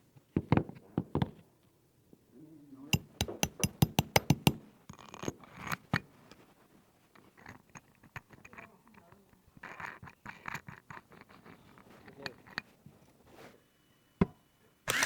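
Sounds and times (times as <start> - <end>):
hammer striking wood: 3.0 - 4.6.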